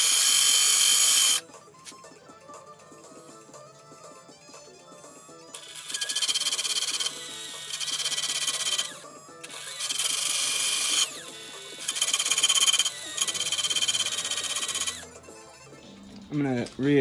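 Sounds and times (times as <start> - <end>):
power sander grinding metal: 0.0 - 1.4, 5.6 - 15.0.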